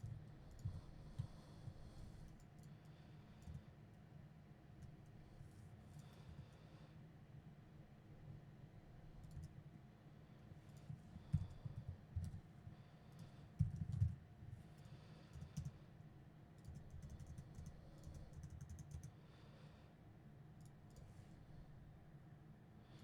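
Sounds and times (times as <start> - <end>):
typing on computer keyboard: 9.2 - 9.6, 10.7 - 12.4, 13.2 - 14.2, 15.3 - 15.8, 16.6 - 19.2.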